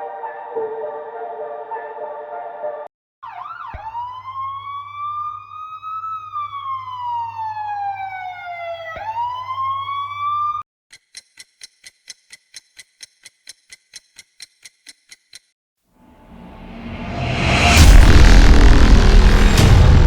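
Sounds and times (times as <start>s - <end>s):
siren wailing: 3.2s - 10.6s.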